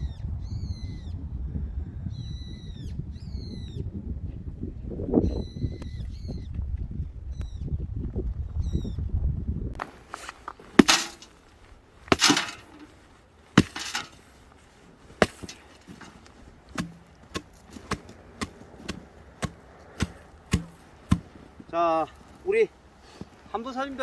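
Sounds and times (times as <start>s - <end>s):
bird chirps: 2.1s - 3.9s
wood chopping knocks: 10.8s - 11.3s, 12.1s - 12.9s, 13.6s - 14.2s, 15.2s - 21.3s.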